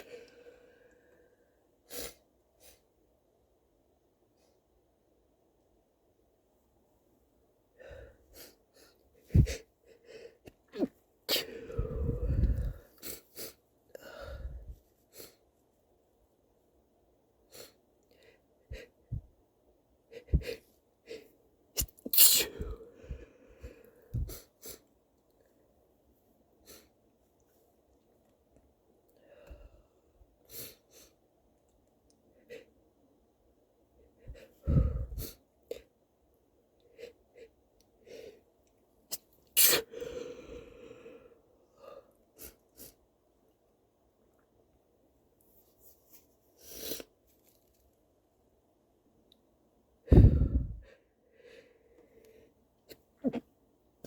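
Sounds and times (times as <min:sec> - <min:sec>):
person hitching breaths and sniffs: 0:08.0 - 0:15.4, 0:20.1 - 0:24.8, 0:50.1 - 0:51.0
person sneezing: 0:21.8 - 0:22.8, 0:39.6 - 0:40.0, 0:53.2 - 0:53.5.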